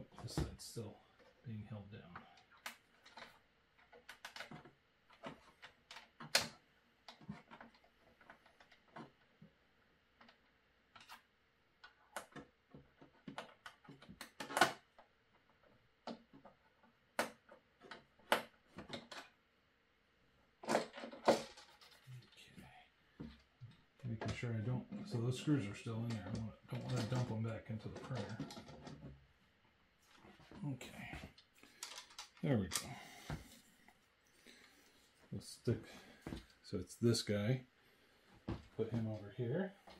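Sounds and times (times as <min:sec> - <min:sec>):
hard plastic parts clicking: 0:31.4 - 0:32.9.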